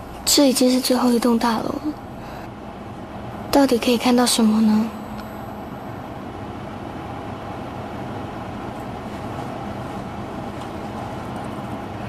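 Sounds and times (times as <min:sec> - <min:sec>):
low background rumble: 0:00.0 - 0:12.0.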